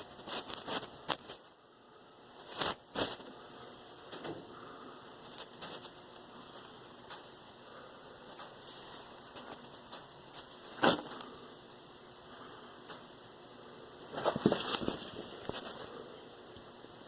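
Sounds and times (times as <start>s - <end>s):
light scratching and clicking: 0.0s - 1.6s, 5.2s - 7.4s, 8.2s - 11.3s.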